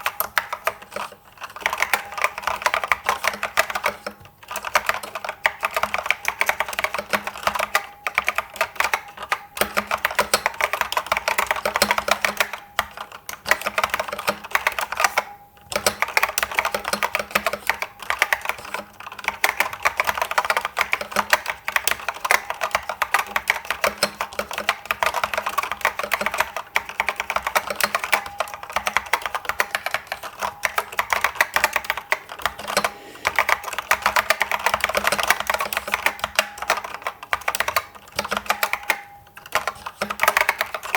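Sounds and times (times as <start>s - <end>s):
fast keyboard typing clicks: 0.0s - 40.9s.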